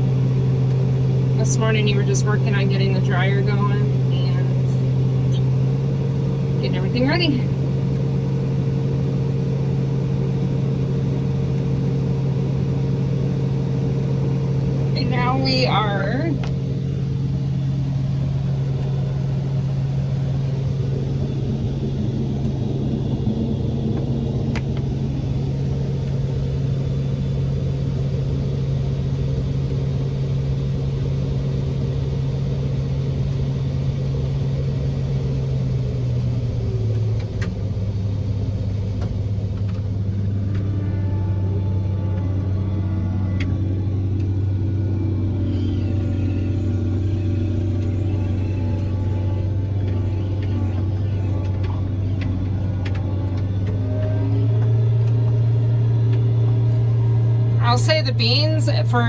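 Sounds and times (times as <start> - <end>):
farm machine engine running: 0.0 - 59.0.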